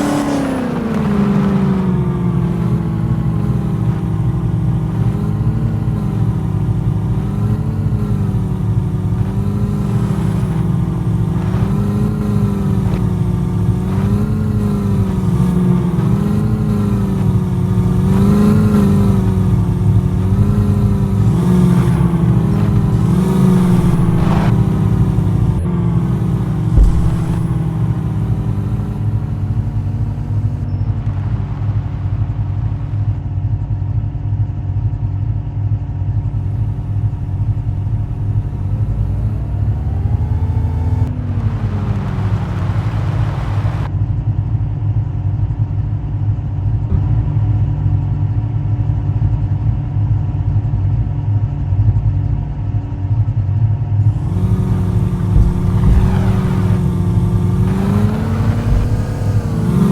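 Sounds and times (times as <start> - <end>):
car engine revving: 0.0 - 33.3, 36.1 - 43.9, 54.0 - 59.9
loud rushing noise: 20.7 - 33.2, 54.1 - 59.9.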